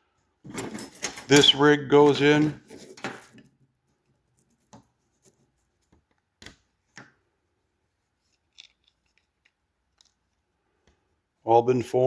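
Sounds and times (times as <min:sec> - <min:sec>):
faint clicks and taps of small parts: 0:02.9 - 0:07.2, 0:08.3 - 0:11.1.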